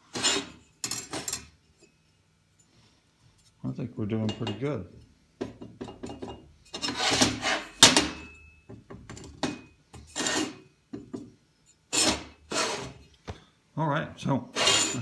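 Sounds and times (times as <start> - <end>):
steel parts scraping on metal table: 0.0 - 1.5, 6.7 - 8.2, 10.0 - 10.7, 11.9 - 13.1, 14.5 - 15.0.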